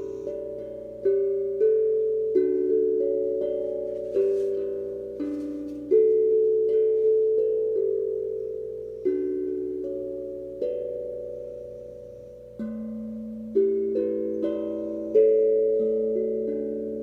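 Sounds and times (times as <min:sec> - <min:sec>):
steel tongue drum notes: 0:00.0 - 0:17.0.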